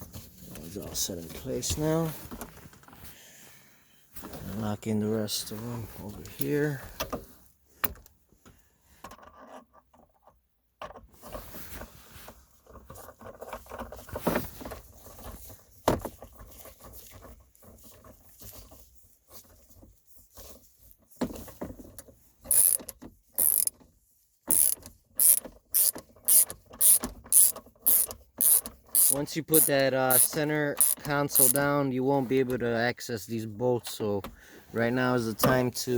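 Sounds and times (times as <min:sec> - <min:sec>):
tool handling clicks and knocks: 0:21.2 - 0:23.9, 0:24.5 - 0:31.6
hand ratchet strokes: 0:22.5 - 0:23.7, 0:24.5 - 0:31.6.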